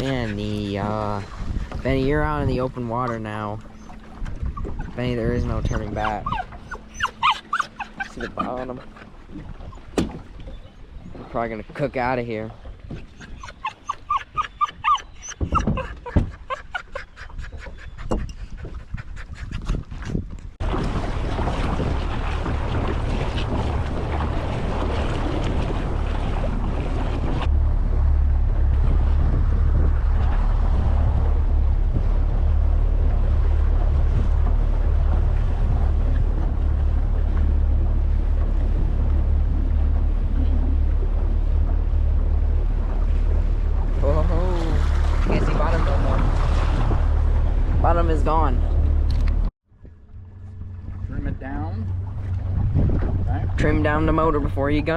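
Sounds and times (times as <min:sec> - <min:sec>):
outboard motor rumbling: 0:00.0 - 0:54.9
water noise: 0:00.0 - 0:54.9
wind buffeting microphone: 0:00.0 - 0:54.9
dog whimpering: 0:04.6 - 0:09.8, 0:13.1 - 0:18.4.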